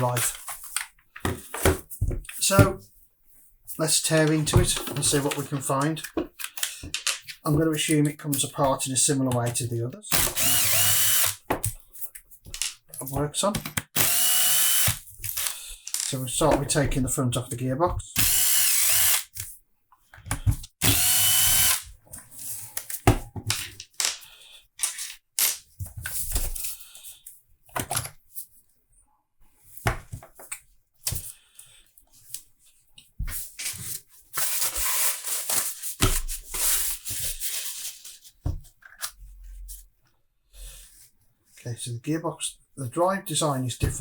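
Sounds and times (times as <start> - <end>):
power screwdriver whirring: 10.1 - 11.4, 14.0 - 15.5, 18.2 - 19.4, 20.8 - 21.9
screws and metal parts clattering: 12.6 - 16.2.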